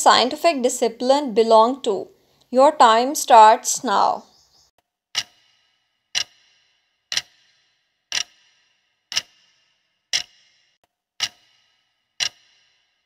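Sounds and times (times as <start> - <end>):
clock ticking with metallic ring: 5.1 - 13.0.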